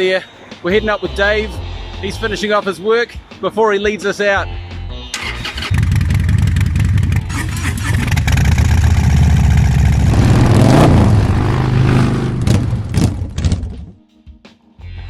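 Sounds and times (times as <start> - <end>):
motorcycle engine running: 5.7 - 13.8.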